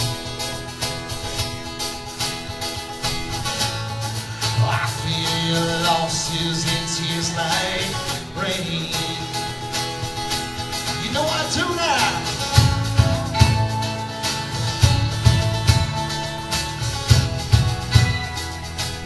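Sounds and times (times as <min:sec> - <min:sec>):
drum beat: 0:00.0 - 0:19.0
guitar: 0:00.0 - 0:19.0
live band playing: 0:00.0 - 0:19.0
person singing: 0:04.5 - 0:10.2.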